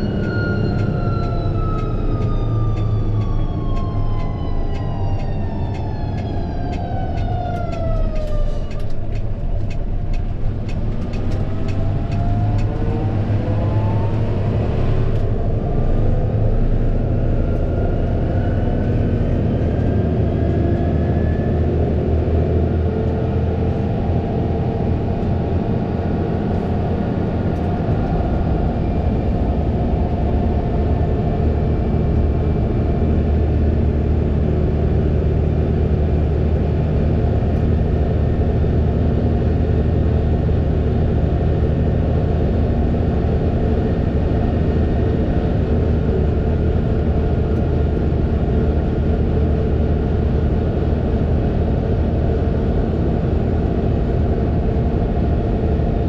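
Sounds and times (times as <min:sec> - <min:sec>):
rising whine: 0:00.0 - 0:56.0
tractor engine drone: 0:00.0 - 0:56.0.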